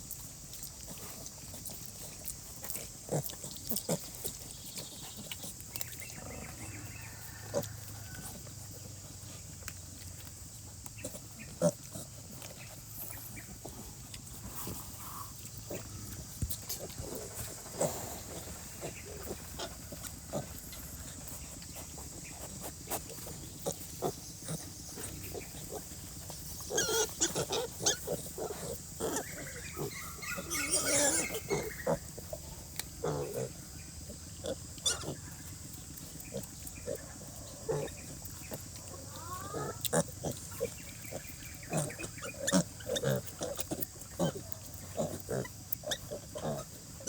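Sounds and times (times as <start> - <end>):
pigs grunting: 0.5 - 10.2, 10.9 - 47.0
pig squealing: 26.6 - 32.3, 34.4 - 35.3, 38.8 - 46.7.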